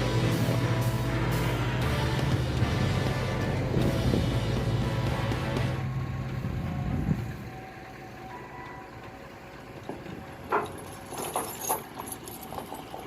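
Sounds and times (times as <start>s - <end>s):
heavy truck engine running: 0.0s - 13.0s
knocks and clanks: 9.7s - 13.0s.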